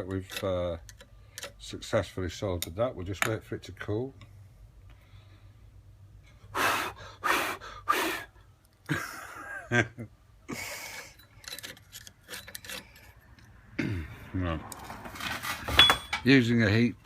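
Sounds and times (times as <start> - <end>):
short puffs of breath: 6.4 - 8.4.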